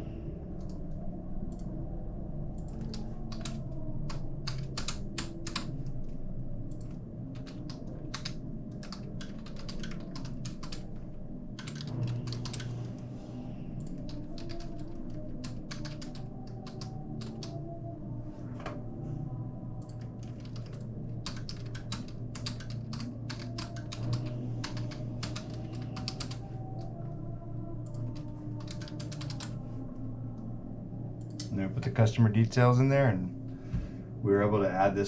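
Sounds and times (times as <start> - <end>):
steady low hum: 0.0 - 35.0
computer keyboard typing: 2.6 - 5.8, 6.7 - 11.0, 11.6 - 12.8, 13.8 - 17.6, 19.8 - 26.9, 27.8 - 29.6.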